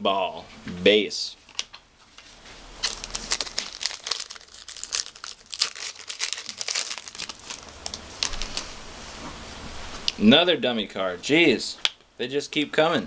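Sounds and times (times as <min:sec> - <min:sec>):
foil wrapper crinkling and tearing: 0:02.8 - 0:08.8.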